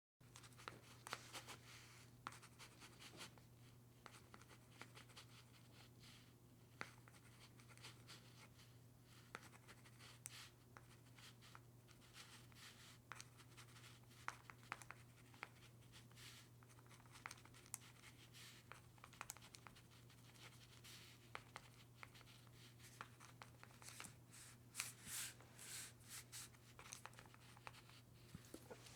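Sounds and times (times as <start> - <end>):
faint low hum: 16.7 - 28.9.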